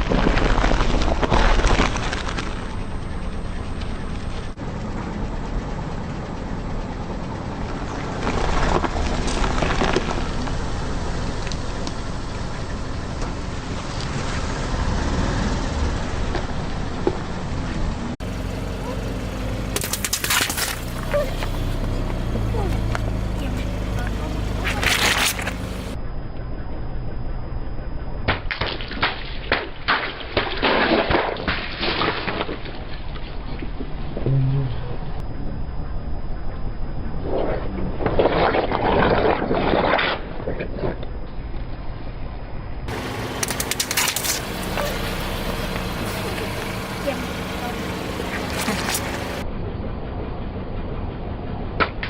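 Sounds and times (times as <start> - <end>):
brittle object crunching under tyre: 0.0 - 2.8, 8.2 - 10.8, 19.7 - 21.9, 24.6 - 25.9, 42.9 - 44.7
car engine running low: 0.0 - 29.0, 32.1 - 52.0
low rumble: 0.0 - 29.9, 32.6 - 52.0.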